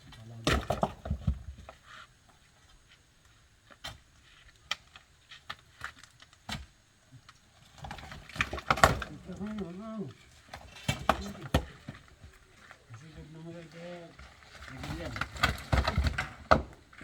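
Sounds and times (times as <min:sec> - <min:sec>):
hard objects knocking: 0:10.6 - 0:12.4.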